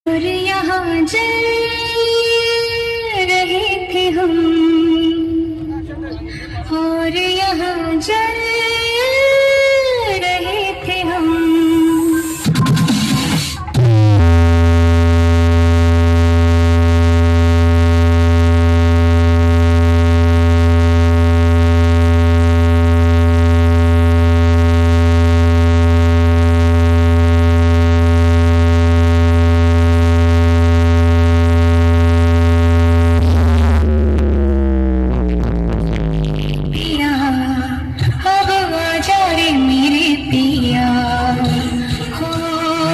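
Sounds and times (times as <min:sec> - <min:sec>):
deep synthesized bass tone: 0:11.4 - 0:38.8.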